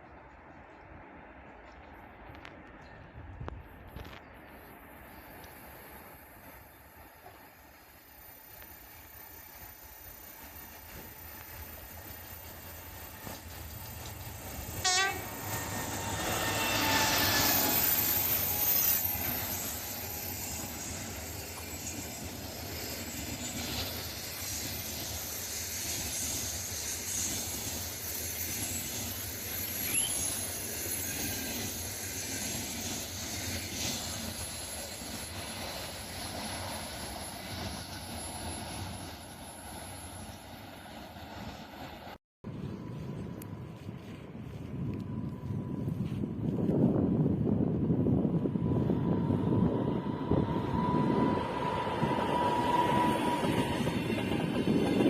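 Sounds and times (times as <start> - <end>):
passenger train passing: 0.0 - 55.0
train horn blast: 14.7 - 17.1.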